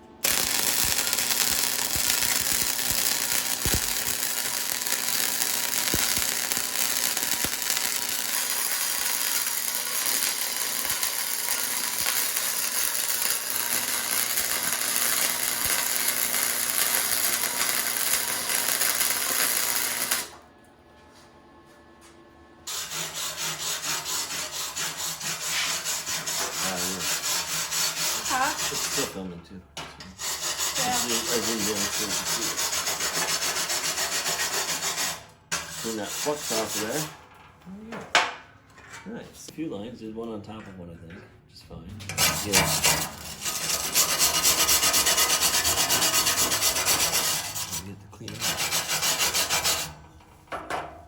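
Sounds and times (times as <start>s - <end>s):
welding arc crackling: 0.2s - 20.4s, 28.2s - 28.6s, 30.2s - 34.2s, 35.8s - 37.1s, 42.2s - 47.7s.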